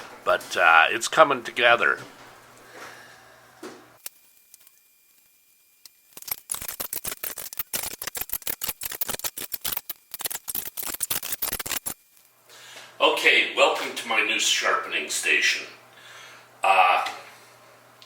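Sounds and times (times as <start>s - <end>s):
rapid sharp clicks: 5.8s - 12.0s.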